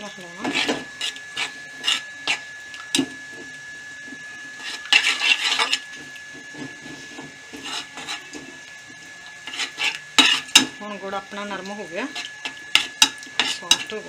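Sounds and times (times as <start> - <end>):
spoon scraping pan bottom: 0.4 - 2.4, 4.6 - 8.6, 9.4 - 10.8, 12.1 - 14.0.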